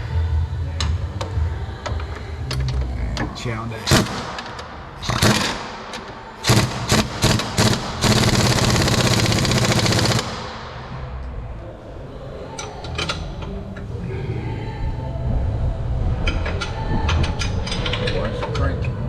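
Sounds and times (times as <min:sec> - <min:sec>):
impact wrench rattling: 0:03.9 - 0:10.6.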